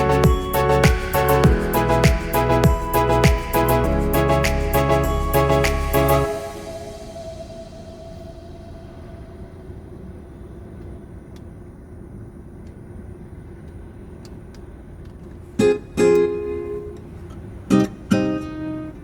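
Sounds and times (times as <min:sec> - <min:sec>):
strummed acoustic guitar chords: 0:00.0 - 0:06.6
held musical note: 0:00.0 - 0:10.6.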